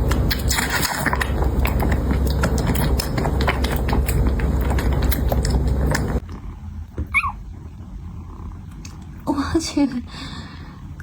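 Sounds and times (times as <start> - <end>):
cat purring: 7.5 - 9.2.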